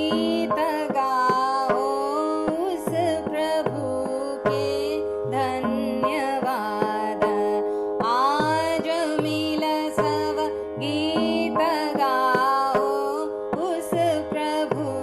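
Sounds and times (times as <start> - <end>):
plucked string melody: 0.0 - 15.0
tabla strokes: 0.0 - 15.0.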